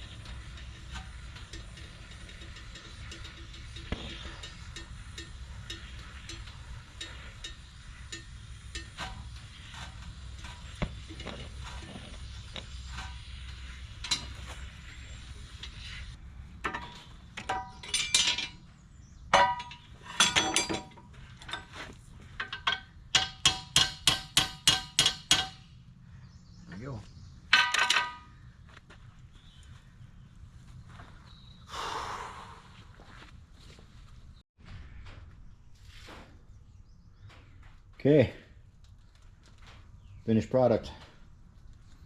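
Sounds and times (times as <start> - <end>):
hammer striking steel: 22.7 - 25.7.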